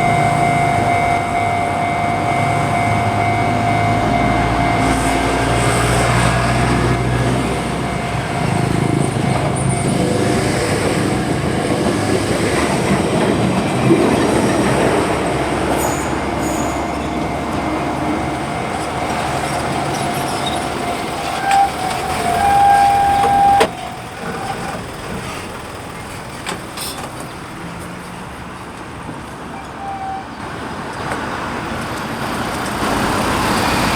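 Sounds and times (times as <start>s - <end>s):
horn-like note: 0.0s - 10.6s, 15.7s - 23.7s
thin steady tone: 0.0s - 11.2s
road traffic passing: 0.0s - 33.9s.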